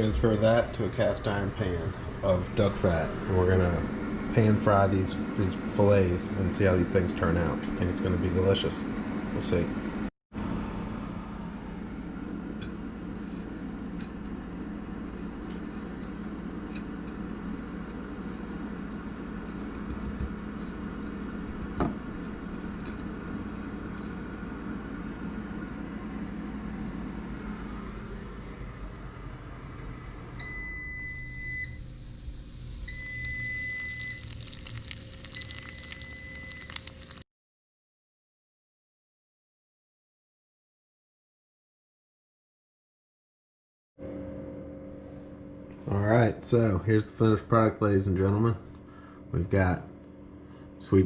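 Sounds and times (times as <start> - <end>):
appliance beeping: 30.4 - 32.0, 32.8 - 37.2
fish sizzling in a pan: 31.8 - 37.2.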